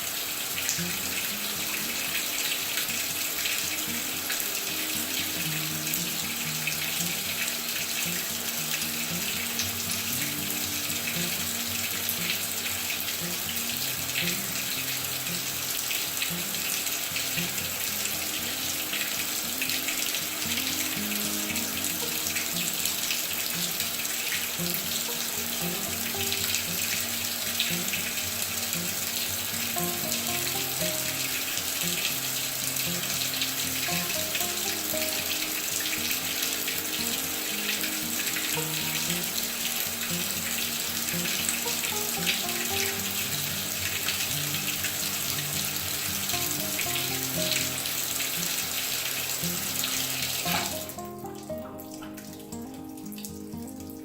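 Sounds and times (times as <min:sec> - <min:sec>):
water filling washing machine: 0:00.0 - 0:52.3
background music: 0:17.4 - 0:43.7, 0:49.6 - 0:54.0.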